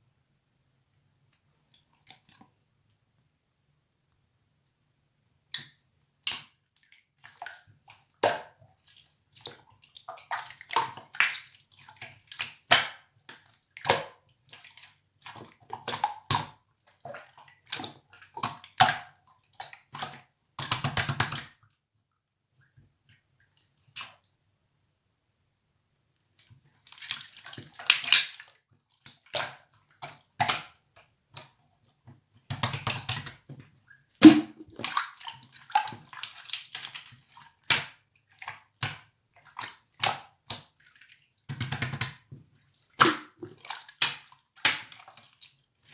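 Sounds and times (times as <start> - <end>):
slime squishing: 34.2 - 35.0.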